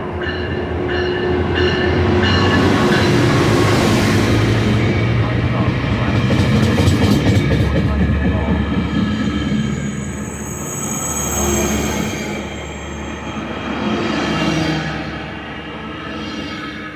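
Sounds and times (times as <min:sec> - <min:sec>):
diesel locomotive engine drone: 0:00.0 - 0:16.9
high-pitched wheel squeal: 0:09.6 - 0:13.5.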